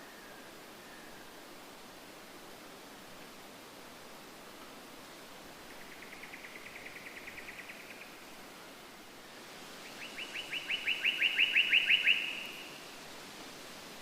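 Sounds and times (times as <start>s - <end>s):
faint steady hiss: 0.0s - 14.0s
songbird trilling: 10.0s - 12.7s.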